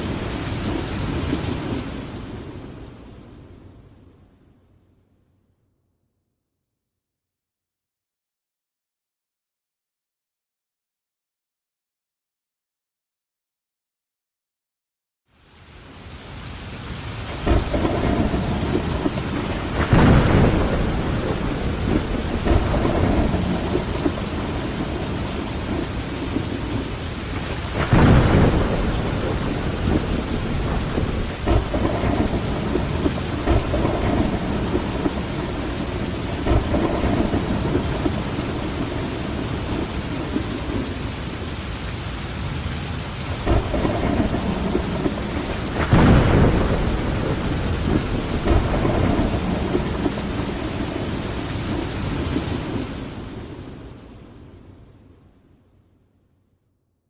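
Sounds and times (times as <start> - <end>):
rain on window glass: 0.0 - 3.5, 15.3 - 54.7
thunder rumbling: 0.0 - 4.2, 16.6 - 55.0.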